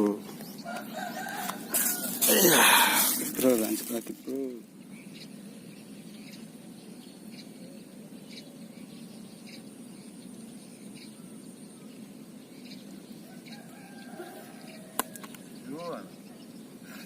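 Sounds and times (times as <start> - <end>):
small bird chirping: 4.6 - 17.0.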